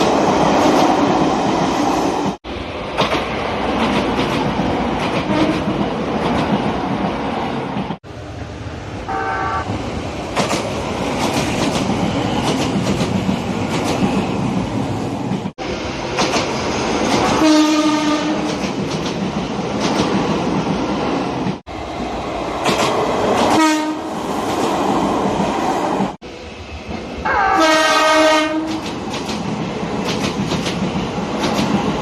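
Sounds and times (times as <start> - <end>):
train rumble and wheel clatter: 0.0 - 32.0
train horn blasts: 9.1 - 9.7, 17.4 - 18.5, 23.6 - 24.1, 27.2 - 28.8.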